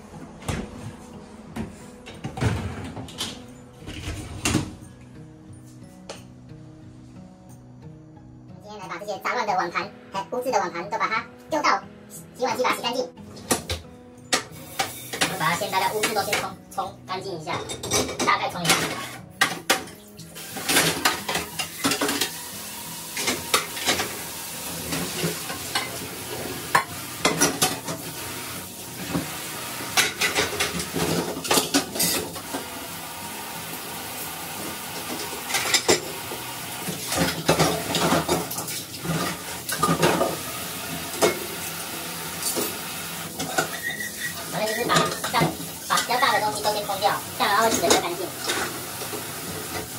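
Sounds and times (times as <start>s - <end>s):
running tap water: 14.5s - 16.5s, 18.7s - 49.9s
dishes clinking in sink: 26.7s - 28.0s, 29.9s - 32.4s, 35.5s - 36.2s, 36.9s - 40.4s, 43.4s - 46.2s.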